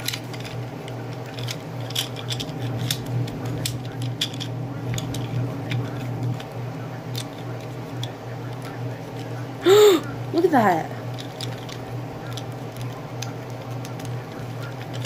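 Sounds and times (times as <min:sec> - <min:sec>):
plastic puzzle clicks and clacks: 0:00.0 - 0:06.5, 0:11.1 - 0:15.0
steady low hum: 0:00.0 - 0:15.0.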